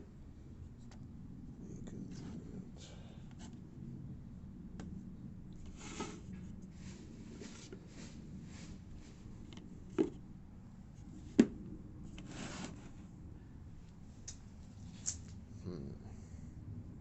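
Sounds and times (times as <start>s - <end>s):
soft rustling and rubbing: 5.6s - 10.2s, 12.1s - 13.1s.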